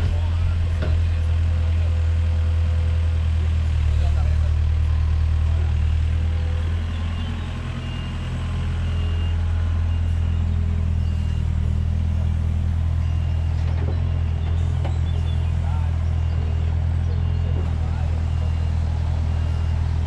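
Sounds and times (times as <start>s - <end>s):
diesel engine running: 0.0s - 20.0s
faint high beep: 8.8s - 11.8s.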